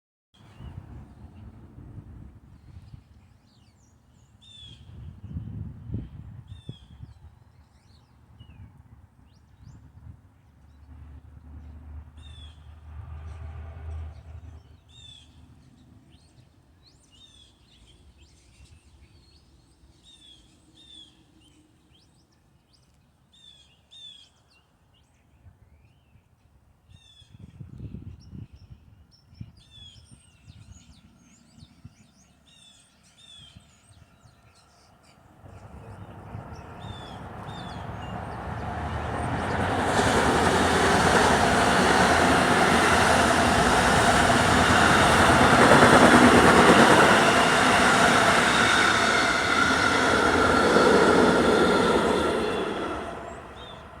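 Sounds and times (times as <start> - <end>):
train passing rumble: 10.9 - 15.6, 35.0 - 54.0.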